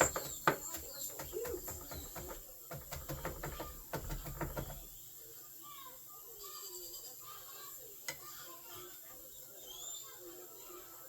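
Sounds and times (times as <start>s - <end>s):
cookware and utensils clicking: 0.0s - 4.9s.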